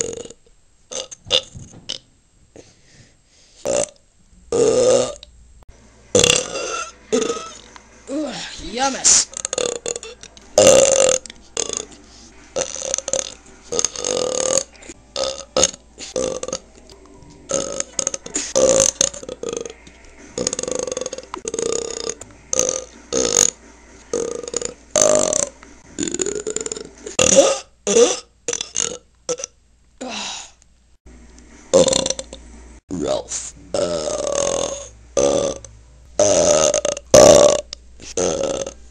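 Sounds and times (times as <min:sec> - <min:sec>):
person belching: 0:00.0 - 0:02.0, 0:03.7 - 0:05.3, 0:06.1 - 0:07.7, 0:09.3 - 0:11.9, 0:12.6 - 0:16.6, 0:17.5 - 0:19.8, 0:20.4 - 0:29.6, 0:31.7 - 0:32.3, 0:32.9 - 0:38.8.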